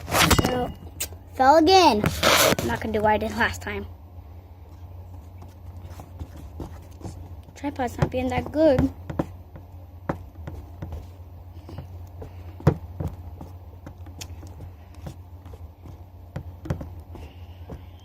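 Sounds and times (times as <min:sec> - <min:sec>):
low hum: 0:00.0 - 0:18.0.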